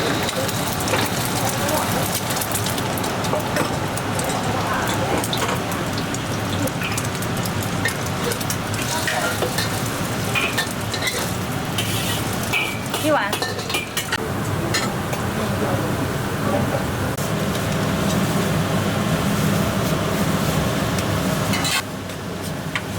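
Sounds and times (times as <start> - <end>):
food sizzling in a pan: 0.0 - 14.1
metal utensil clinking on pan: 8.8 - 9.8, 12.5 - 14.2.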